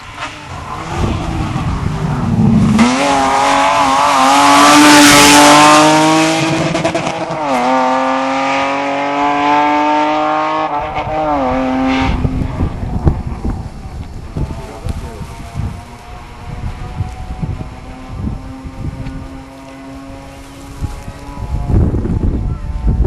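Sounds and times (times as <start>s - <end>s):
rally car engine at full throttle: 0.0s - 23.0s.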